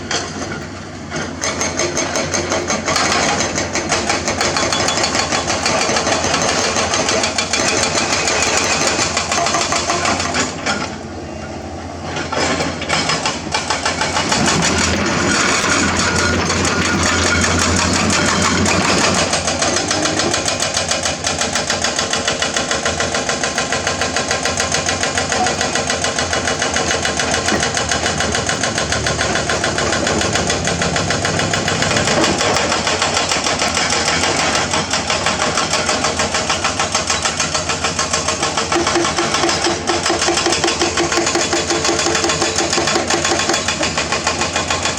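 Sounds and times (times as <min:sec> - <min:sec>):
excavator diesel engine running: 0:00.0 - 0:44.9.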